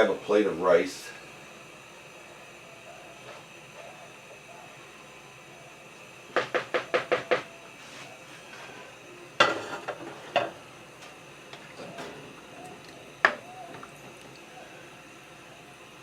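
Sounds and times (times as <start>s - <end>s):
dishes and utensils knocking: 6.4s - 7.5s, 9.4s - 10.6s.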